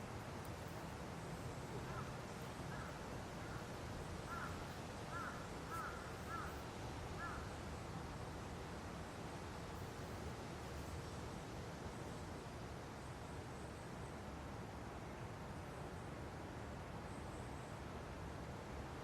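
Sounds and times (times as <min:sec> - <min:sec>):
bird calling: 0:04.3 - 0:06.6.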